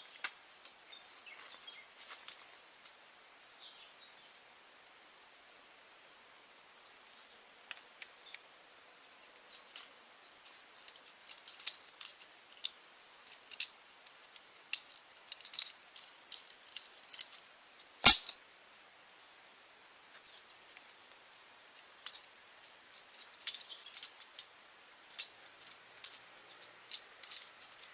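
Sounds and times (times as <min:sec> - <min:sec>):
small objects clicking and rattling: 0:09.6 - 0:18.4, 0:22.0 - 0:27.9.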